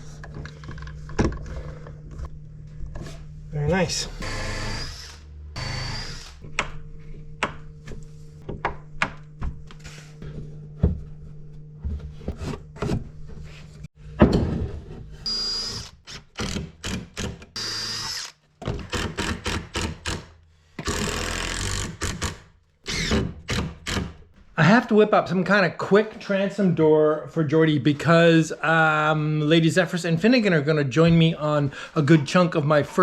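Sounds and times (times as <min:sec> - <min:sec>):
power drill running: 0:04.1 - 0:06.4, 0:17.6 - 0:18.3.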